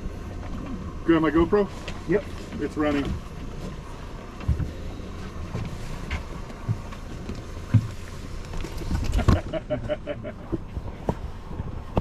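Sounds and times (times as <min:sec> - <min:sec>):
boat hum: 0:00.0 - 0:12.0.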